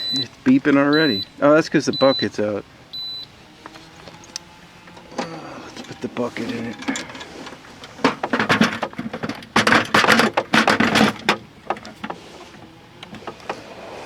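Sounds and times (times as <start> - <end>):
small clicks: 3.0 - 6.0
bucket scraping and clattering: 3.6 - 14.0.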